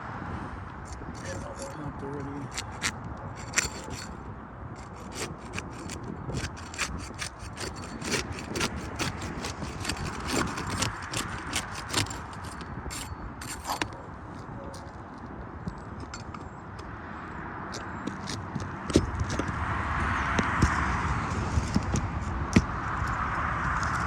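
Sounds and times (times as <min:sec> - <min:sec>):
scraping and rubbing: 0:00.9 - 0:14.0
shingles cracking: 0:02.4 - 0:04.2, 0:04.8 - 0:14.0.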